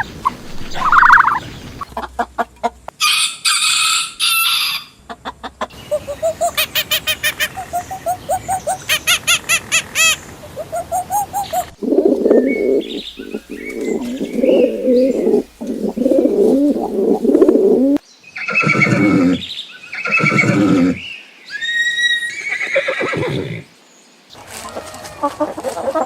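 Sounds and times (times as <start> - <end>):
low warbling animal calls: 0.0 - 1.4, 10.5 - 19.5
loud drawn-out animal calls: 8.9 - 23.6.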